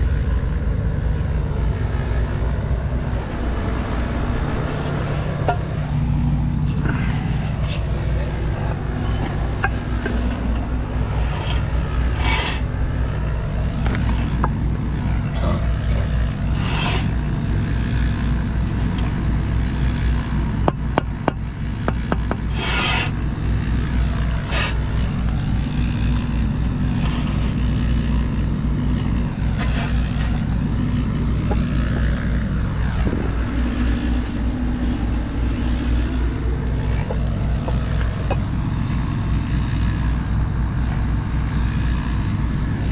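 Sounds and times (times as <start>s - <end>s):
low engine hum: 0.0s - 42.9s
short scraping strokes: 4.5s - 5.8s, 6.5s - 12.8s, 15.4s - 17.2s, 22.4s - 23.4s, 24.1s - 25.3s, 26.7s - 27.9s, 29.3s - 30.6s.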